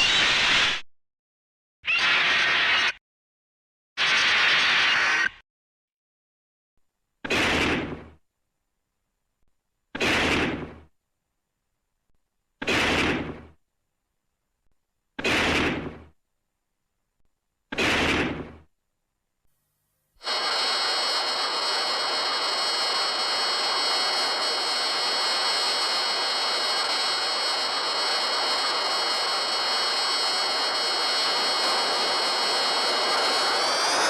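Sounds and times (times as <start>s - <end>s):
jet-like rushing hiss: 20.2s - 34.0s
high whining tones: 20.3s - 34.0s.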